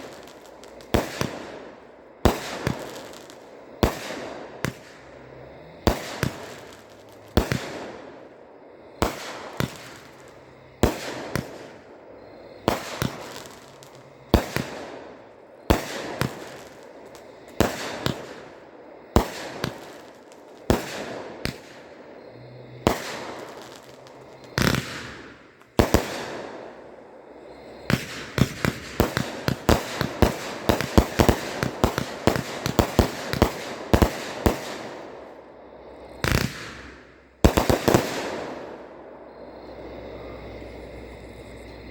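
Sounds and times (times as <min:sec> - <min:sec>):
firework shots banging: 0:00.0 - 0:08.3, 0:09.0 - 0:11.9, 0:12.5 - 0:22.2, 0:22.8 - 0:26.8, 0:27.8 - 0:35.3, 0:36.2 - 0:38.8.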